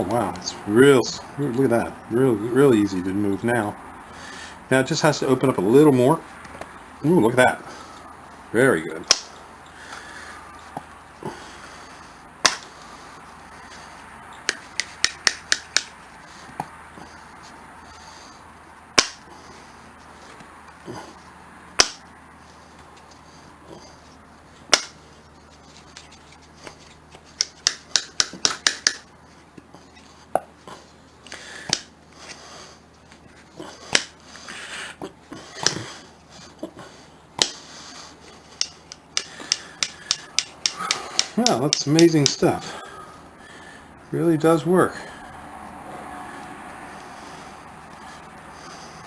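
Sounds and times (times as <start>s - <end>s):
pliers jaws clicking: 14.5s - 15.9s, 27.4s - 29.0s, 38.6s - 42.4s.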